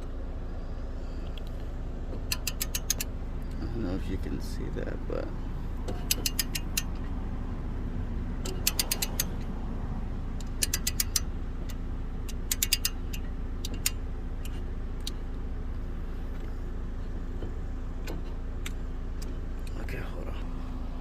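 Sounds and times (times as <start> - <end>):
steady low hum: 0.0 - 21.0
ratcheting tool clicking: 2.3 - 3.1, 5.9 - 7.0, 8.4 - 9.4, 10.4 - 11.3, 12.2 - 15.2.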